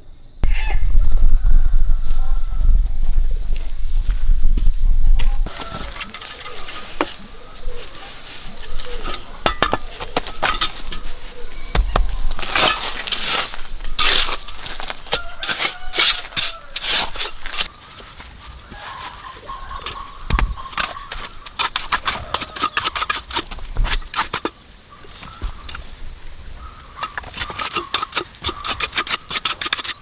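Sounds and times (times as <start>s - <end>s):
scraping rustles: 5.4s - 30.0s
small hard objects clinking: 12.0s - 17.7s.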